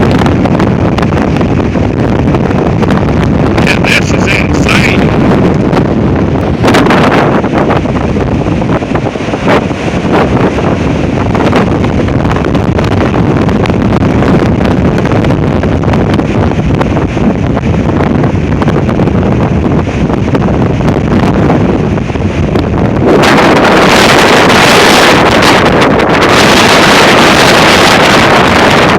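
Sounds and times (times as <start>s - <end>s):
strong wind buffeting microphone: 0.0s - 28.9s.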